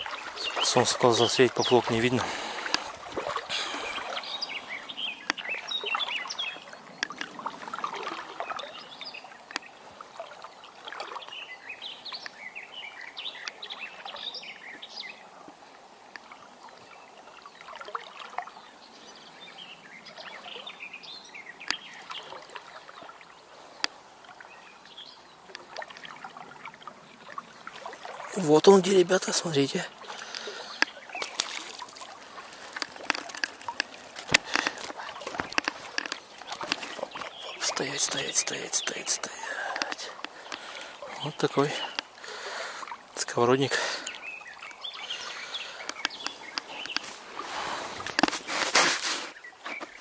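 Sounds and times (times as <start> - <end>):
flowing river: 0.0 - 50.0
small birds chirping: 0.0 - 50.0
sharp clicks: 39.6 - 40.8, 45.8 - 47.1.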